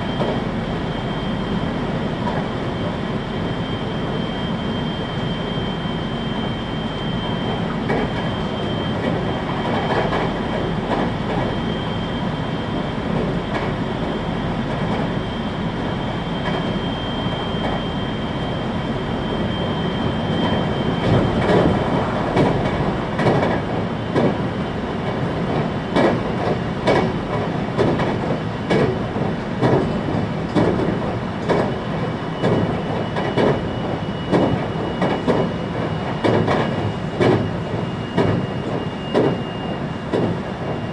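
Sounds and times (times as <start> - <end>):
train cabin rumble with high whine: 0.0 - 40.9
wheels clacking over rail joints: 25.0 - 31.8.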